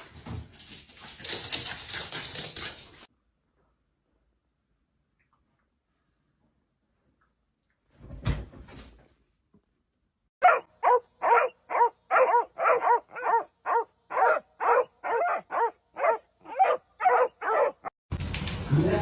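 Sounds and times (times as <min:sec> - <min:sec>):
dog barking: 0:10.4 - 0:17.9.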